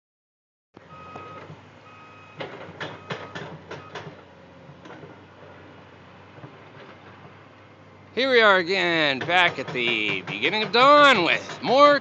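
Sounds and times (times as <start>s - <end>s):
machinery engine hum: 0.8s - 12.0s
reversing alarm beeping: 0.9s - 4.1s, 9.4s - 9.8s
sharp bangs: 9.0s - 11.7s.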